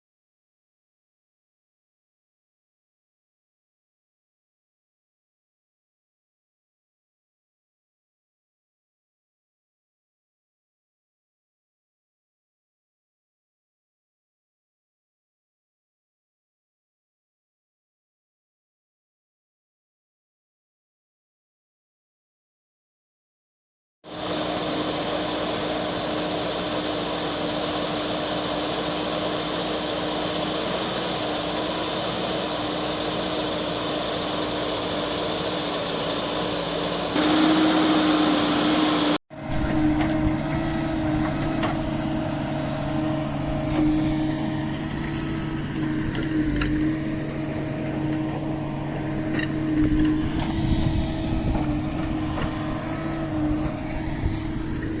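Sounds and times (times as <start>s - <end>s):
diesel engine running: 24.1s - 55.0s.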